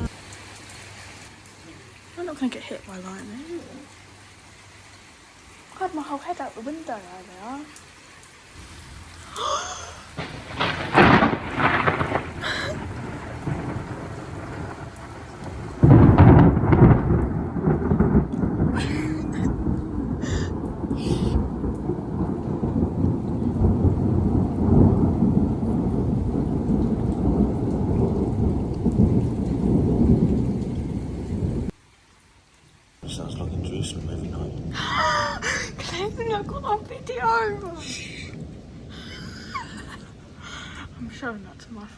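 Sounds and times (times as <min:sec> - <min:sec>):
rain falling: 0:00.0 - 0:41.9
thunder cracks and rumble: 0:08.6 - 0:31.8, 0:33.0 - 0:41.9.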